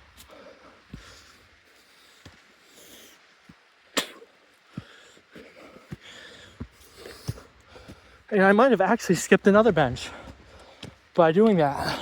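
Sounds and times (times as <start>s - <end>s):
footsteps on a trail: 0.0s - 3.8s, 4.4s - 12.0s
person breathing hard: 4.7s - 8.3s.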